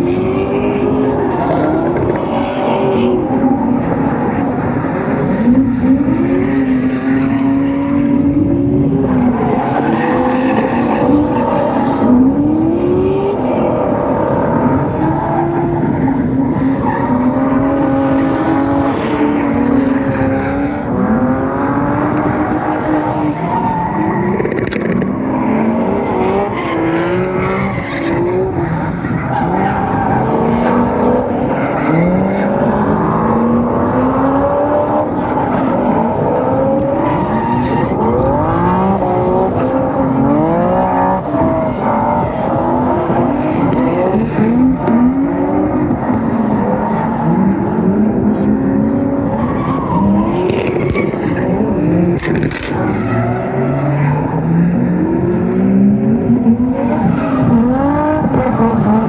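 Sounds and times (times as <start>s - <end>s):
car engines revving: 0.0s - 59.0s
tyre squeal and skidding: 26.1s - 34.5s, 35.1s - 45.9s, 49.0s - 54.6s, 56.4s - 59.0s.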